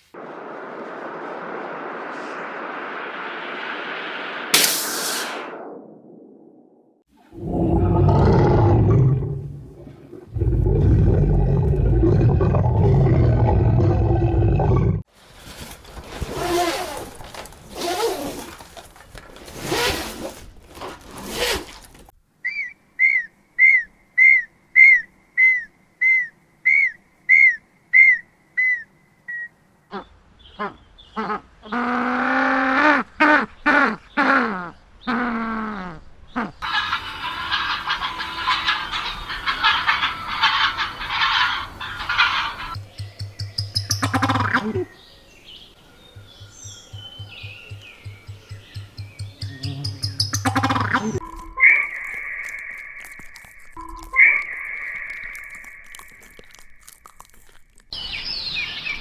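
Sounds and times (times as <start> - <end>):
animal roars: 7.3 - 15.0
harsh rasping animal calls: 29.9 - 42.8
drawn-out pitched animal call: 37.9 - 42.8.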